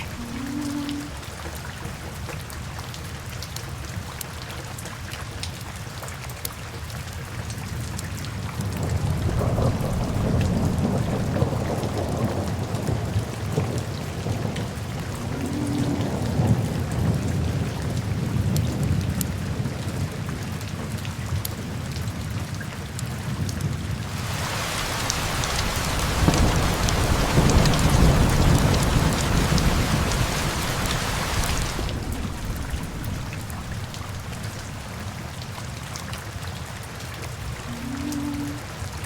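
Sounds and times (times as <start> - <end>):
steady rain: 0.0 - 39.0
low rumbling thunder: 8.6 - 20.1, 24.1 - 35.8.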